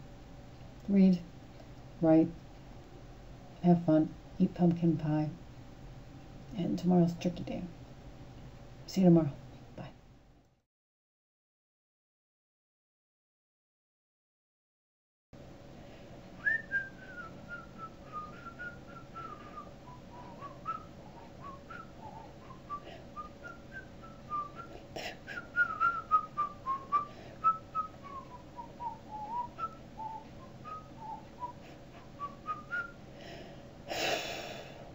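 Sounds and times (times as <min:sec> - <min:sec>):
person whistling a tune: 0:16.4 - 0:24.7, 0:25.3 - 0:33.0.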